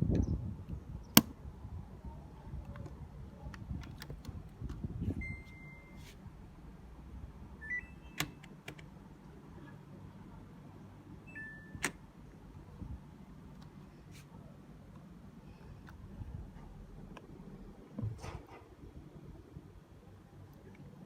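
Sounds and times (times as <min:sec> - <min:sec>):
short high beeps: 0:05.2 - 0:06.0.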